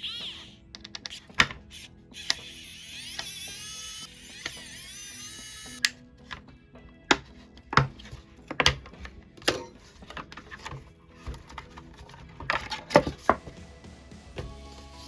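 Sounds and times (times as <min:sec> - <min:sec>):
quiet background music: 0:00.0 - 0:15.0
hard plastic parts clicking: 0:00.7 - 0:02.5, 0:05.6 - 0:13.6.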